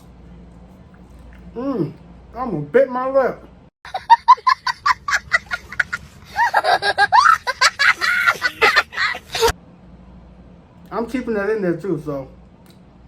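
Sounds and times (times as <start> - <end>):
man laughing: 3.9 - 9.5.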